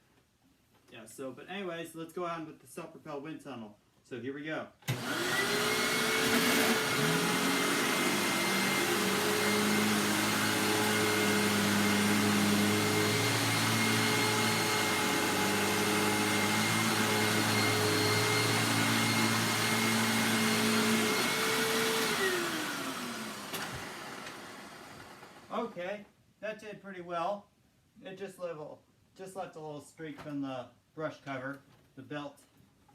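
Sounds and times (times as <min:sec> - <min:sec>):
vacuum cleaner running on carpet: 0:04.9 - 0:25.6.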